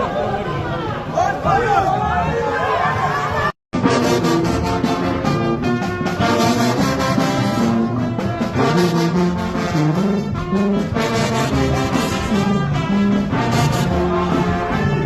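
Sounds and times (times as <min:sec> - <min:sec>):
brass horns playing held notes: 0:03.8 - 0:15.0.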